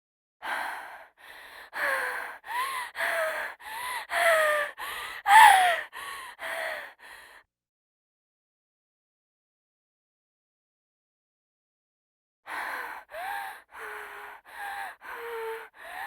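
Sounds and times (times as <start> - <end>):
woman's laboured gasping breaths: 0.4 - 7.4, 12.5 - 16.0.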